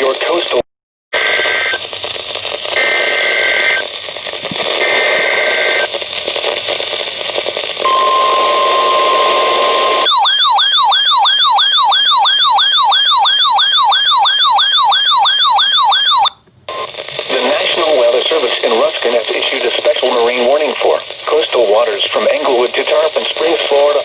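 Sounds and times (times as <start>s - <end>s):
radio static hiss: 0.0s - 0.6s, 1.2s - 10.1s, 16.1s - 24.0s
fast-warbling electronic siren: 7.9s - 16.3s.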